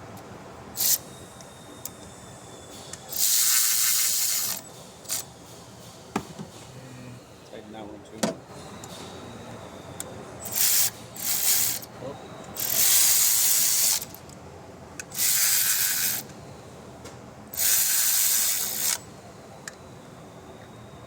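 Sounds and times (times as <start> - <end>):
socket ratchet clicking: 0.8 - 1.0.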